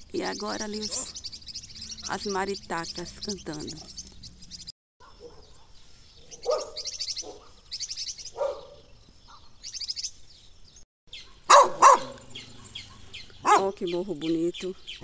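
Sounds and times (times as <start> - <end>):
parrots squawking: 0.6 - 4.6
dog barking: 5.0 - 7.6, 8.3 - 9.5, 11.2 - 13.8.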